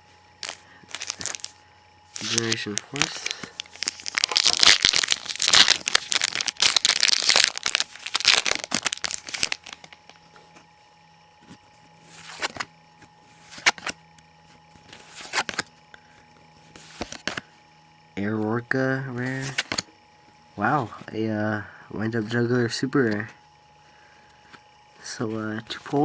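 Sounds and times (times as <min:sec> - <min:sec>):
foil wrapper tearing and crinkling: 0:00.4 - 0:01.5, 0:02.2 - 0:10.2
cards rustling: 0:00.4 - 0:10.7, 0:11.4 - 0:17.5, 0:19.2 - 0:19.9.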